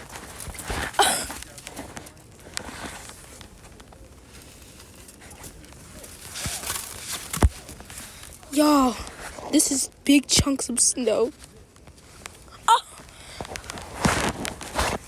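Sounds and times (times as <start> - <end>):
crackling: 11.2 - 15.0
footsteps crunching in snow: 11.3 - 15.0.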